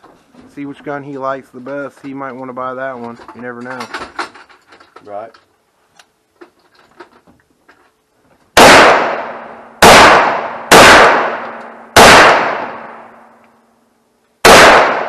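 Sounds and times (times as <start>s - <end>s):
rifle shots with echo: 8.6s - 13.2s, 14.4s - 15.0s.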